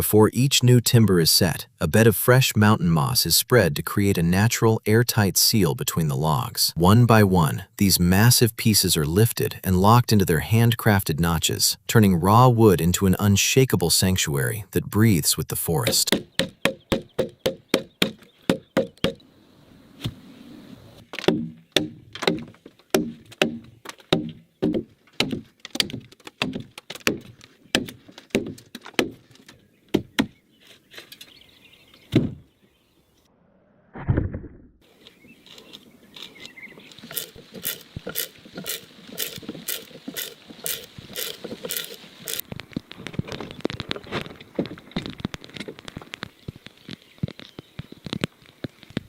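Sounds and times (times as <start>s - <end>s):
hand tools striking wood: 15.8s - 19.2s, 21.1s - 30.3s, 37.1s - 42.4s.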